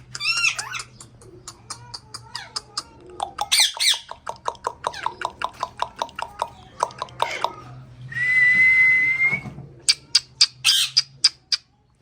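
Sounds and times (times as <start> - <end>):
parrot screeching: 0.1 - 0.9, 10.6 - 11.1
parrot chirping and whistling: 9.9 - 11.4.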